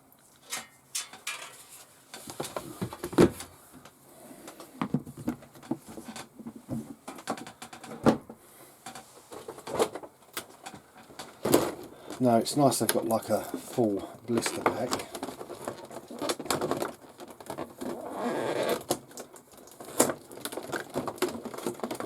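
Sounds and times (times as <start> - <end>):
paper and packaging rustling: 9.2 - 22.0.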